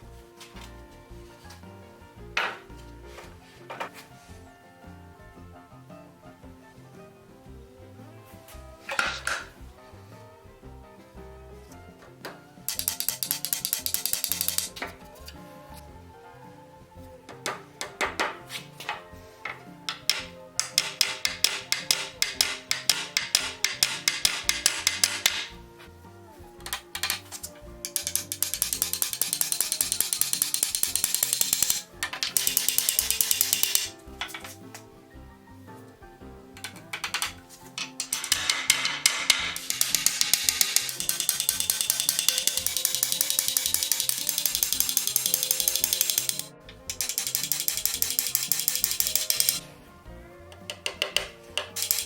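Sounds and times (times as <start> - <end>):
background music: 0.0 - 52.0
rapid mechanical clicking: 12.7 - 14.8, 26.7 - 33.9, 36.6 - 49.6, 50.8 - 52.0.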